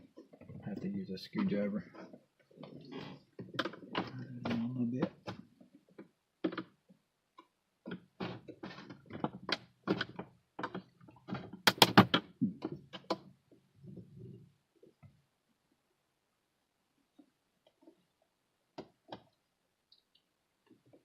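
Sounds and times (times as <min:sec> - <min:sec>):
plastic clicks and knocks: 0:03.4 - 0:06.8, 0:07.4 - 0:13.3, 0:18.8 - 0:19.4.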